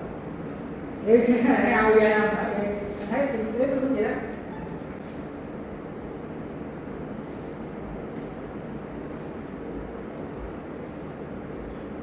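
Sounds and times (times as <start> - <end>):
room hum: 0.0 - 12.0
high-pitched pulsing trill: 10.6 - 11.8.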